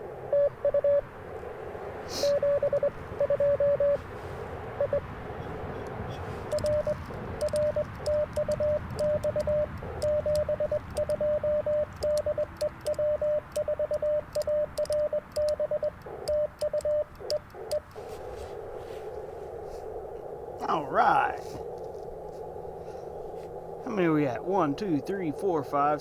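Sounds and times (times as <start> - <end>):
receiver hiss: 0.0 - 26.0
morse code sidetone: 0.3 - 1.1, 2.1 - 4.1, 4.8 - 19.1.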